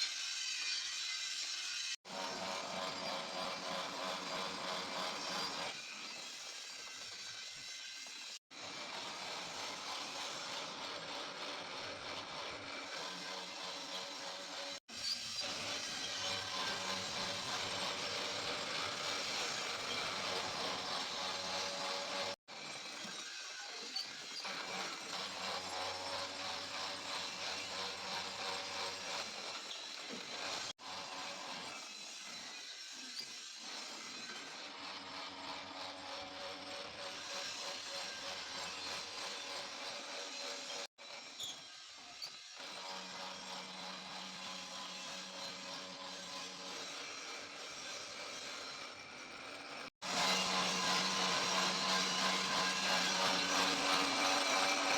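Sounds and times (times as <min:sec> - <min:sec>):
metalworking workshop noise: 0:00.0 - 0:54.9.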